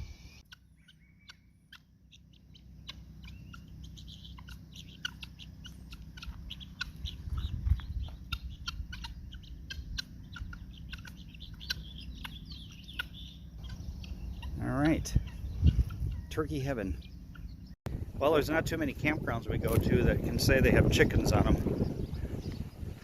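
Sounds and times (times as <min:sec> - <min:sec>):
turkeys clucking: 0:00.4 - 0:17.7
low rumble: 0:02.6 - 0:23.0.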